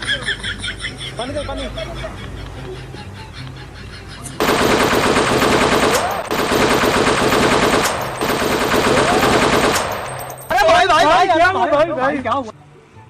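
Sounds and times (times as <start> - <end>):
machine-gun automatic fire: 4.4 - 10.6.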